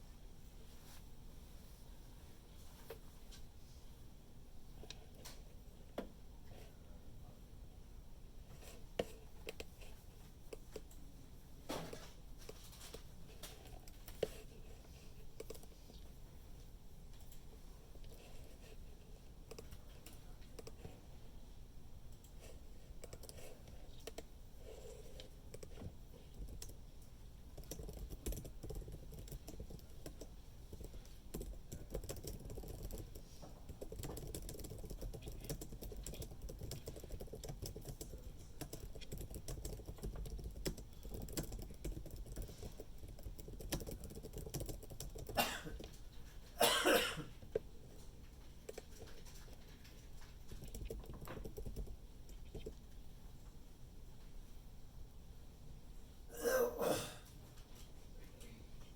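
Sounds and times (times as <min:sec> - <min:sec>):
keyboard typing: 0:09.0 - 0:09.9, 0:15.4 - 0:16.1, 0:19.4 - 0:21.0, 0:22.1 - 0:26.8, 0:27.5 - 0:46.1, 0:47.4 - 0:52.9
person coughing: 0:45.4 - 0:45.8, 0:46.6 - 0:47.4, 0:56.3 - 0:57.3.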